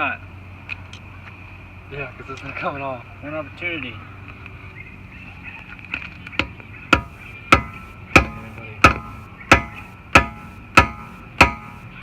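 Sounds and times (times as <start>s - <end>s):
hammer striking steel socket: 6.4s - 11.9s.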